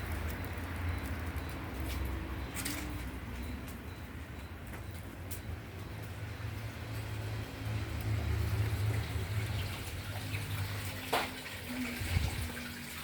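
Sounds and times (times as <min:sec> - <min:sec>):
fire crack: 0:00.0 - 0:01.8.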